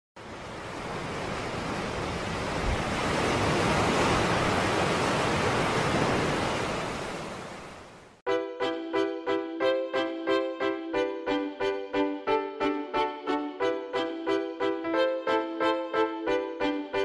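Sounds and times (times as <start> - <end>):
sea surf rushing: 0.2 - 8.2
piano music: 8.3 - 17.0.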